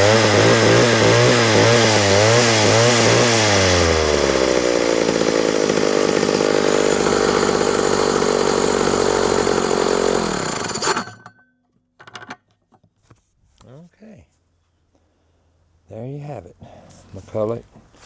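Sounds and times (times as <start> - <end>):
chainsaw engine revving and idling: 0.0 - 11.0.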